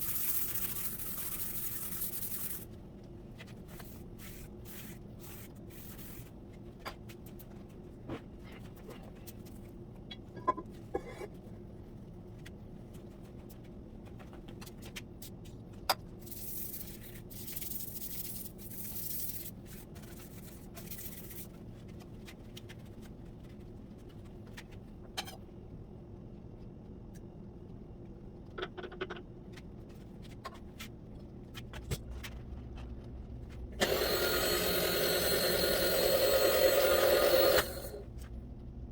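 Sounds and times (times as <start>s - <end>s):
low workshop hum: 0.0s - 38.9s
hiss: 33.8s - 38.0s.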